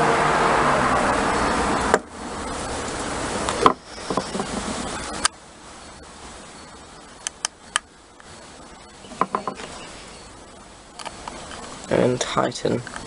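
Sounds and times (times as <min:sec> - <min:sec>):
steady hiss: 0:00.4 - 0:13.0
sharp clicks: 0:03.5 - 0:05.4, 0:07.2 - 0:08.4.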